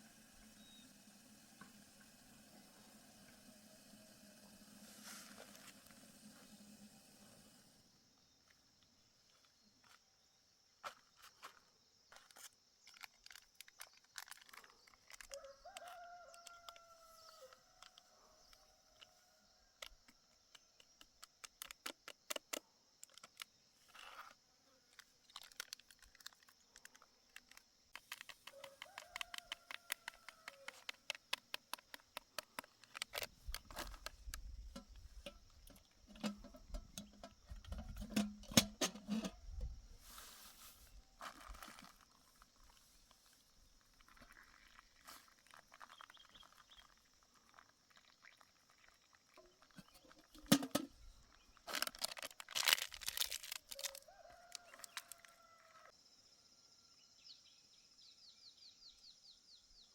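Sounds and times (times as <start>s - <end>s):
rooster crowing: 15.3s - 18.4s, 28.5s - 30.8s, 53.7s - 55.9s.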